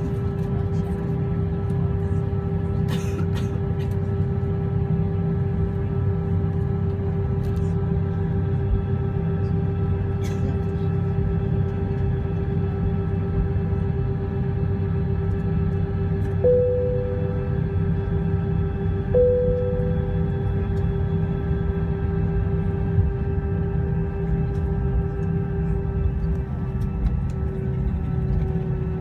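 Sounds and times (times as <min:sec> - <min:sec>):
airliner engine rumble: 0:00.0 - 0:29.0
droning tone: 0:11.9 - 0:29.0.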